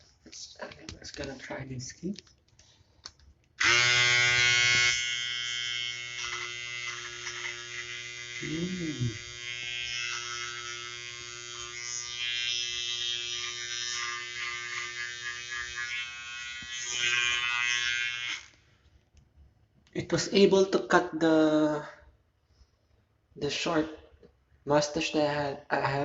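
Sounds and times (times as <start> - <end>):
electric trimmer buzzing: 3.6 - 18.6.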